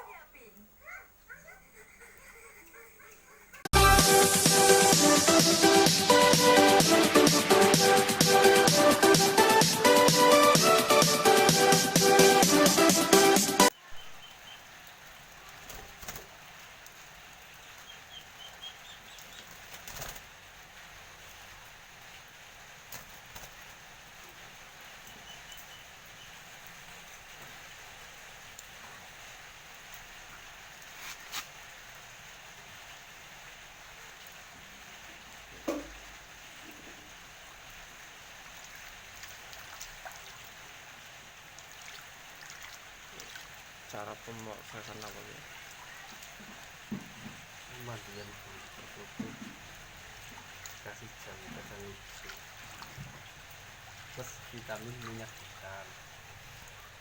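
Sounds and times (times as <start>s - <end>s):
faint high chirps: 13.7s - 14.7s
water trickling: 13.7s - 31.0s, 34.0s - 57.0s
bird wings flapping: 15.0s - 17.0s, 19.2s - 20.4s, 22.8s - 23.8s
knock: 35.6s - 36.0s, 49.2s - 49.6s.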